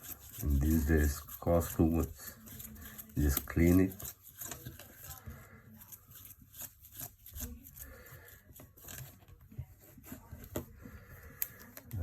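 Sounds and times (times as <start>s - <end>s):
hand rubbing phone screen: 0.0s - 10.8s.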